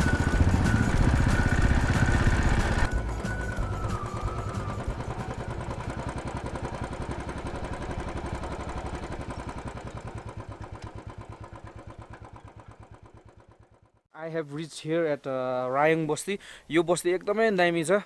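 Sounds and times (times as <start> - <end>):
motorcycle engine idling: 0.0 - 14.1.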